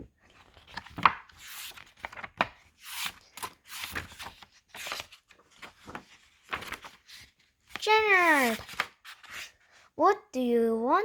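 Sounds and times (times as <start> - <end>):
book pages turning: 0.2 - 9.8.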